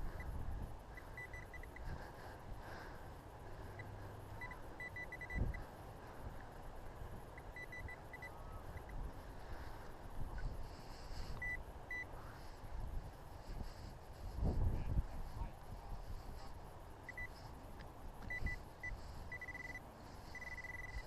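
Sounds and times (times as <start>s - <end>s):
wind rumble on microphone: 0.0s - 2.8s, 4.4s - 19.5s
metal detector beeping: 0.9s - 1.9s, 3.8s - 5.7s, 7.4s - 9.0s, 10.8s - 12.1s, 17.0s - 17.5s, 18.2s - 21.0s.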